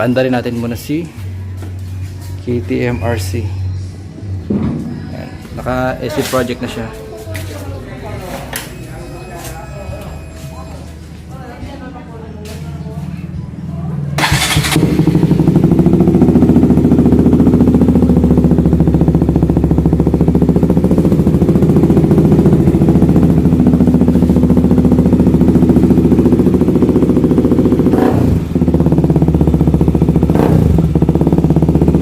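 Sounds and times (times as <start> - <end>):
motorcycle engine running loudly: 14.2 - 32.0.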